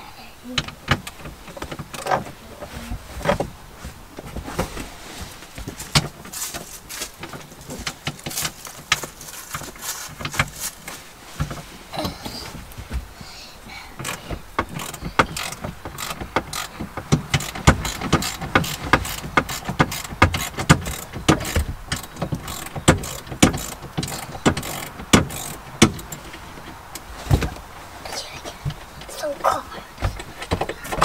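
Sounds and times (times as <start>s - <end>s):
ratchet wrench clicking: 14.0s - 26.3s.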